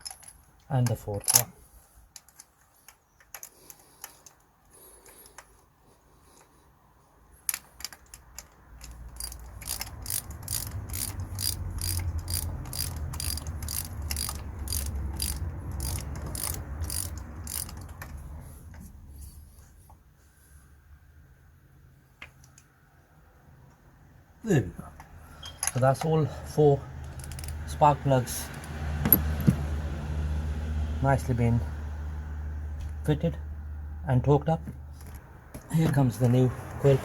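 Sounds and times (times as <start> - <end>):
ratchet wrench clicking: 7.4 - 18.3, 27.0 - 27.7.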